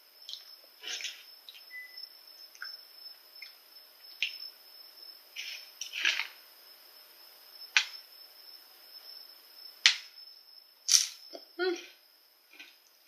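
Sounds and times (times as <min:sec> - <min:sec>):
crunchy scraping: 0:00.8 - 0:01.6, 0:05.3 - 0:06.4.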